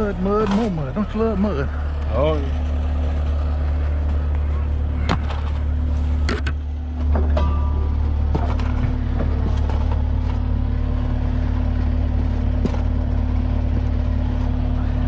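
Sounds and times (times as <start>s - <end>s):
heavy equipment engine running: 0.0s - 15.0s
metallic knocks and clanks: 6.3s - 10.1s.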